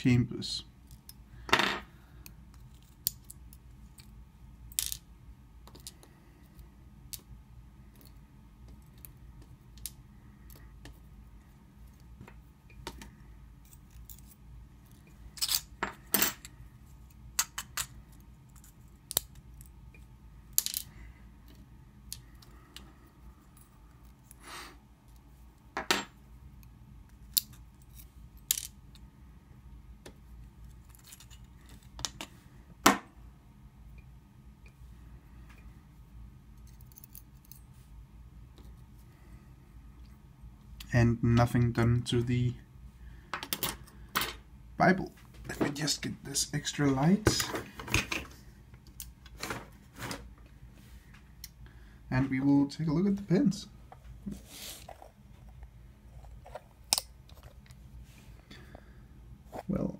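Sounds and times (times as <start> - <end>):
small metal parts clicking: 36.6 - 37.6.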